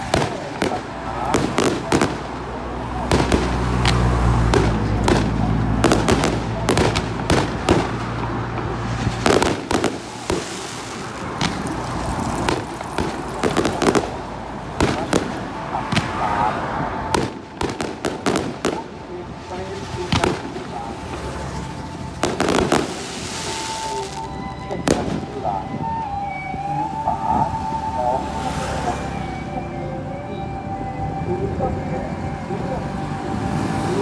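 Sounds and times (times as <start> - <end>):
fireworks bangs and crackles: 0.0 - 26.0.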